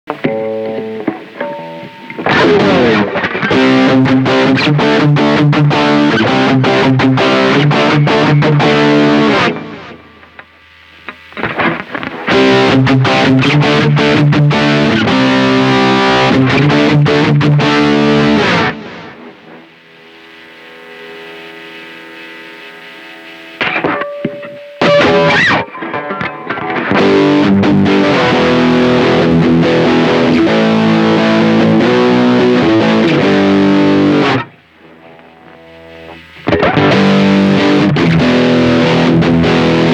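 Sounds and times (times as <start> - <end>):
distorted electric guitar: 0.0 - 39.9.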